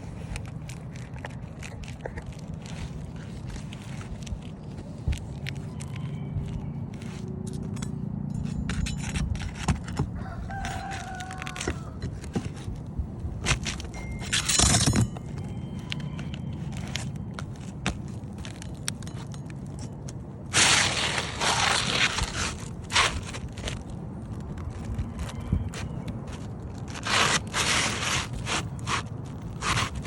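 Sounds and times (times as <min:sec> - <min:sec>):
rooster crowing: 0:10.1 - 0:12.0
loud scrape: 0:20.5 - 0:23.8, 0:26.9 - 0:30.0.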